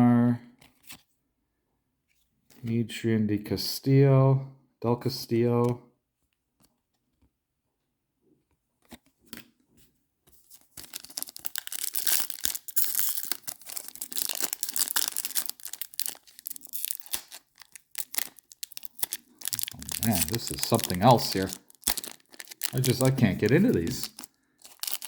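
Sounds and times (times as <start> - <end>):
card pack wrapper crinkling and tearing: 10.4 - 25.0.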